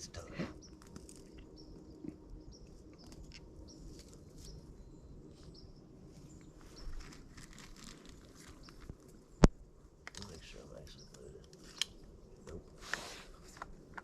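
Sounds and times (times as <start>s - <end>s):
faint high bird chirps: 0.5s - 7.2s.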